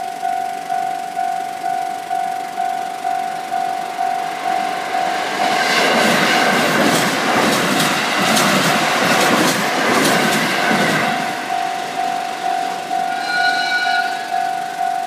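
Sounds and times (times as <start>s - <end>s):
train wheels clacking over rails: 3.9s - 15.0s
level crossing bell dinging: 11.2s - 15.0s.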